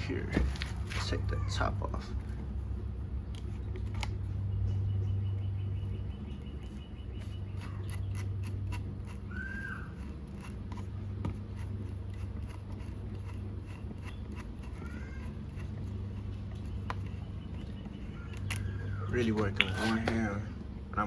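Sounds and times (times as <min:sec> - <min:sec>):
steady low hum: 0:00.0 - 0:21.0
short high squeak: 0:09.0 - 0:10.5
tools and parts clicking: 0:09.9 - 0:18.7.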